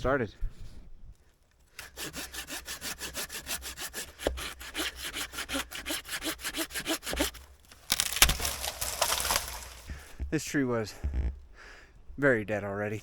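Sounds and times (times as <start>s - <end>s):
hand saw cutting wood: 1.7s - 10.2s
dry wood cracking and snapping: 6.8s - 11.6s.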